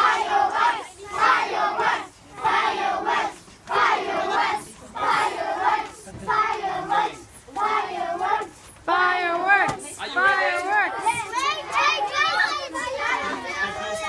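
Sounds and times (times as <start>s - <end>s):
children chanting in unison: 0.0s - 8.5s.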